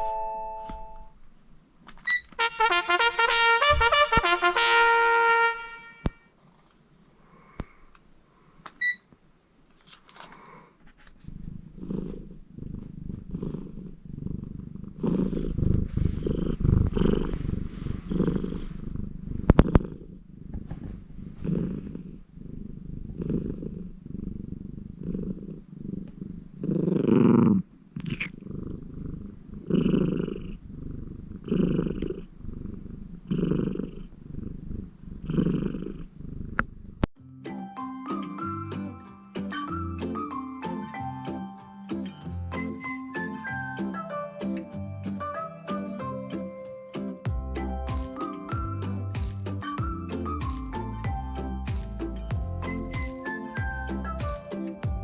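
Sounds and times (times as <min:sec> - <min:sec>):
electronic chime melody: 0:00.0 - 0:01.1
cat purring: 0:10.4 - 0:37.1.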